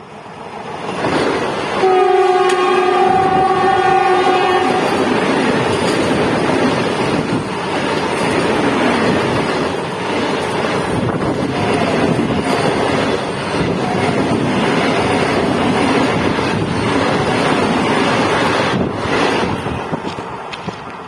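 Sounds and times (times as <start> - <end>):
train rushing past: 0.0 - 21.0
train horn blast: 1.8 - 5.1.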